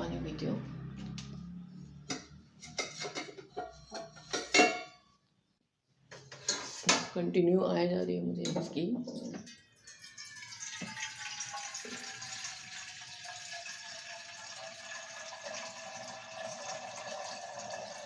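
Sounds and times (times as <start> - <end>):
tap water running: 9.8 - 18.0.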